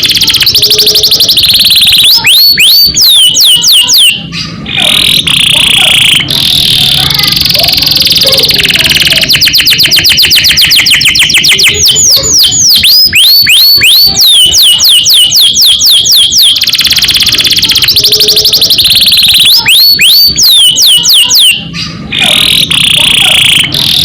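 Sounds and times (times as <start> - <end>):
canary singing: 0.0 - 24.0.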